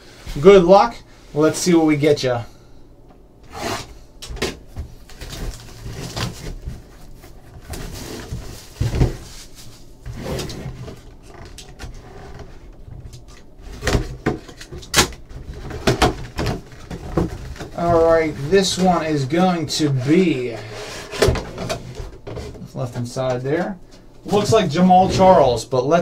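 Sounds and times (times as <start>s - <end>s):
packaging scraping and rustling: 5.0s - 22.7s.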